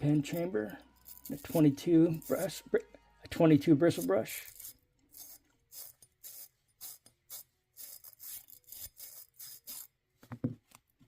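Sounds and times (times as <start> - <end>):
bristle brush scrubbing metal: 1.1 - 2.6, 3.8 - 9.9.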